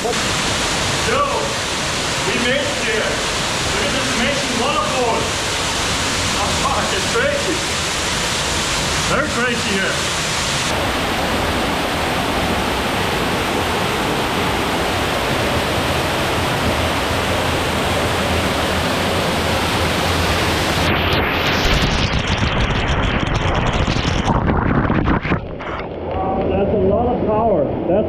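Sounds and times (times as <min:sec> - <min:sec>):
waterfall rushing: 0:00.0 - 0:22.4.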